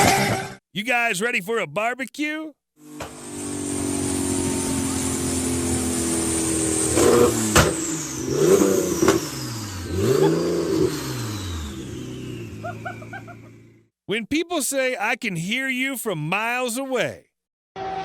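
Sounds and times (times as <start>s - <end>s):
exhaust bangs and cracks: 3.0s - 13.8s
car engine revving: 3.0s - 13.9s.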